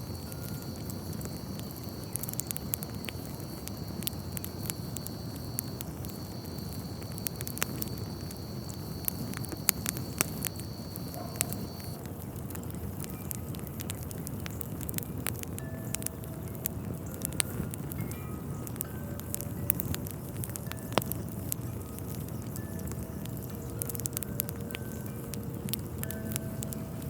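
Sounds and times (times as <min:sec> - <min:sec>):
fire crackling with pops: 0:00.0 - 0:27.0
low steady rush: 0:15.0 - 0:27.0.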